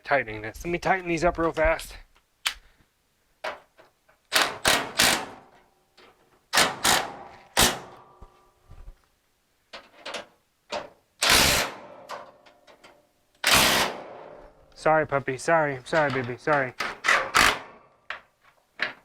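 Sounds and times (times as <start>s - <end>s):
impact wrench bursts: 4.3s - 5.5s, 6.5s - 8.0s, 11.2s - 11.9s, 13.4s - 14.2s, 16.8s - 17.8s.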